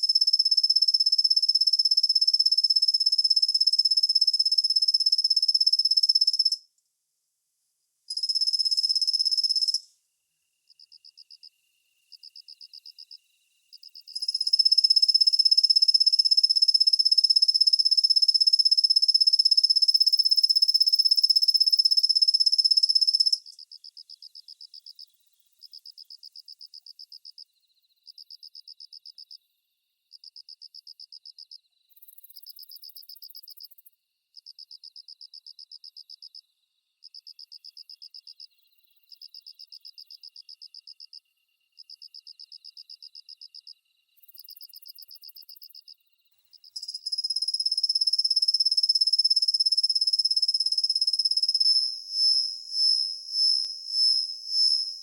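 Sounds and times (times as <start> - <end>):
cricket high-pitched trill: 0.0 - 6.6, 8.1 - 9.9, 10.5 - 27.4, 32.0 - 33.9, 41.8 - 55.0.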